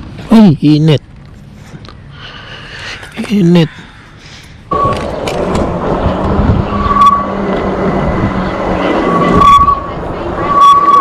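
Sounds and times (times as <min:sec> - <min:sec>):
road and wind noise: 0:00.0 - 0:11.0
brake squealing: 0:04.4 - 0:11.0
e-bike motor hum: 0:04.7 - 0:11.0.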